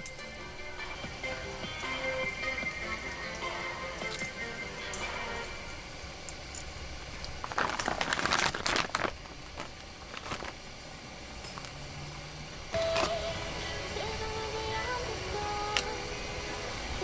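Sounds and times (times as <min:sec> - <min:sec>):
melody: 0:00.0 - 0:05.8
crinkling handling noise: 0:05.8 - 0:16.0.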